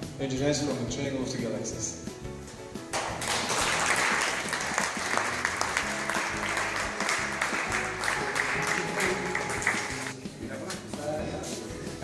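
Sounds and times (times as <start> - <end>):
music playing: 0.0 - 12.0
audience applauding: 2.9 - 10.1.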